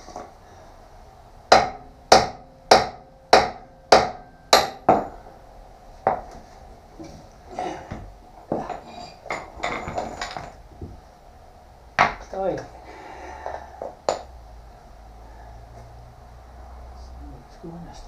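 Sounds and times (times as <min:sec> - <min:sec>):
hammer striking steel: 0:01.5 - 0:05.4.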